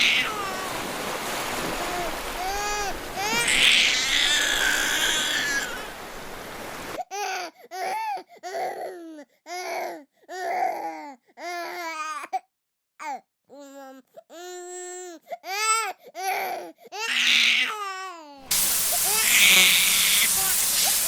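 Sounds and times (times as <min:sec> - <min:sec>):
baby crying: 0:00.0 - 0:00.9, 0:01.6 - 0:06.0, 0:07.0 - 0:12.4, 0:13.0 - 0:21.0
waves surf: 0:00.0 - 0:07.0, 0:18.5 - 0:21.0.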